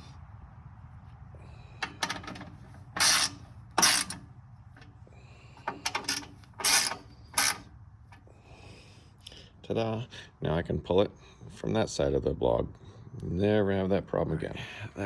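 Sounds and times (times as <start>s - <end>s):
loud rasping strokes: 3.0s - 4.2s, 5.6s - 7.6s.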